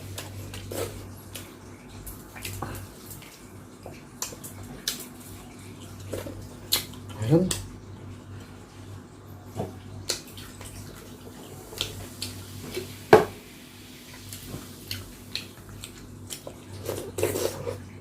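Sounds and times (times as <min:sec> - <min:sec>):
wet eating and slurping: 0:00.0 - 0:07.6, 0:14.0 - 0:18.0.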